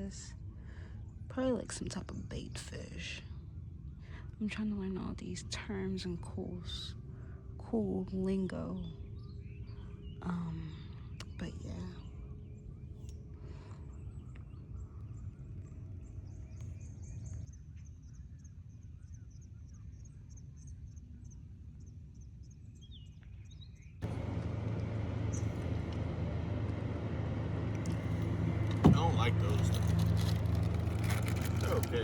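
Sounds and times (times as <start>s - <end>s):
loud motor drone: 24.0s - 32.0s.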